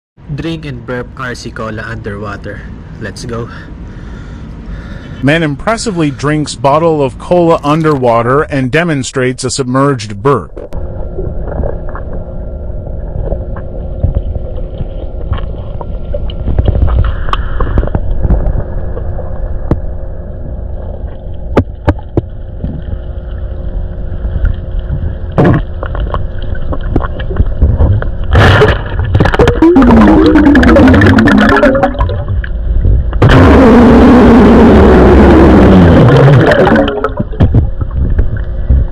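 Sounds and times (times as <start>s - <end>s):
low underwater rumble: 10.5s - 38.9s
underwater bubbling bursts: 24.4s - 38.9s.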